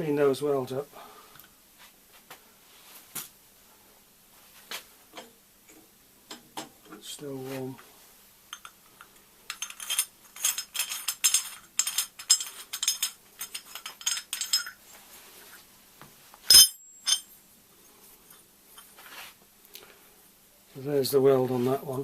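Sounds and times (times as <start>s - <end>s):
metal pipe scraped and clinked: 9.5s - 14.8s, 16.5s - 17.3s
ringing metal clank: 16.5s - 17.3s.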